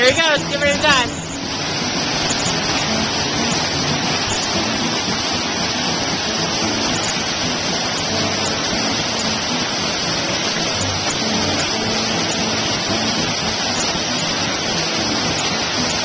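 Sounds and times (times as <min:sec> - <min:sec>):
waterfall rushing: 0:00.0 - 0:16.0.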